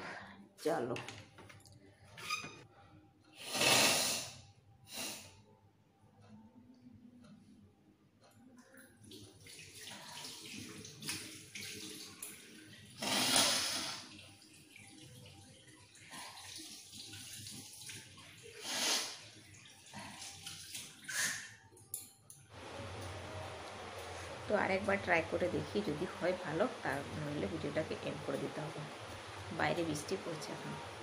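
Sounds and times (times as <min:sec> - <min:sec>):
water running into a washbasin: 0:08.7 - 0:21.6, 0:22.6 - 0:31.0.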